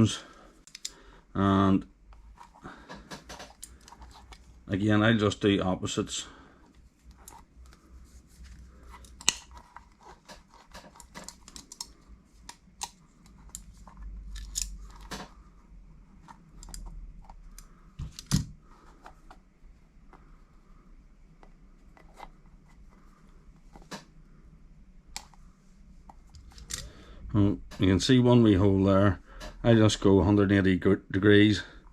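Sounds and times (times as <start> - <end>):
clicks and rustling of hands: 2.1 - 4.5, 7.0 - 15.4.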